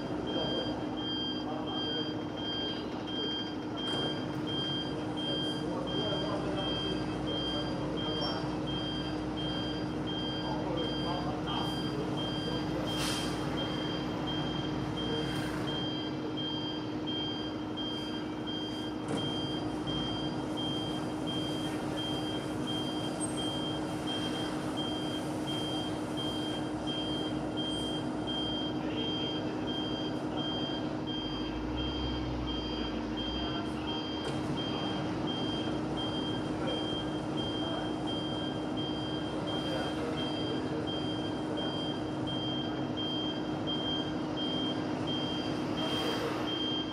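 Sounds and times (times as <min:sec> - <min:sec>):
washing machine running: 0:00.0 - 0:33.4
high beep: 0:00.3 - 0:46.9.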